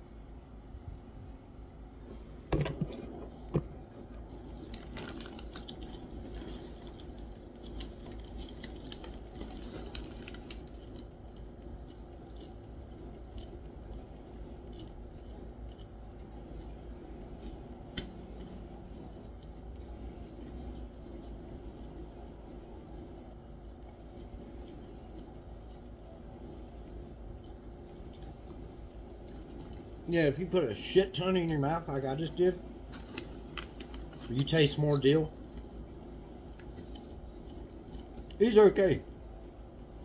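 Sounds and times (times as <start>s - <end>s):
steady low hum: 0.0s - 40.0s
crunching popcorn: 2.5s - 39.4s
snack bag crinkling: 2.6s - 16.7s, 31.2s - 38.9s.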